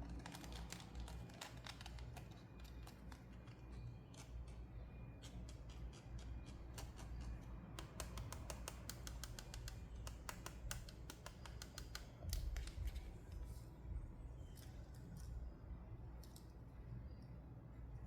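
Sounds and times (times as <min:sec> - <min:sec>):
plastic toy pieces clicking: 0:07.8 - 0:12.7.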